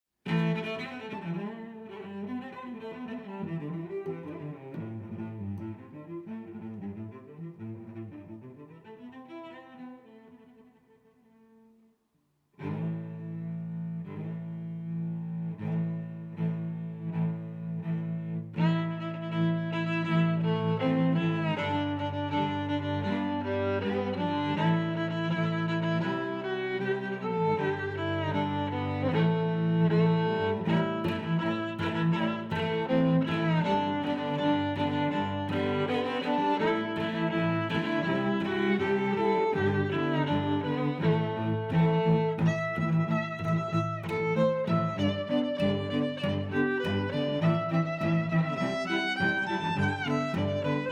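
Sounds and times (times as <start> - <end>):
cello and bowed strings melody: 0.2 - 11.9, 12.6 - 50.9.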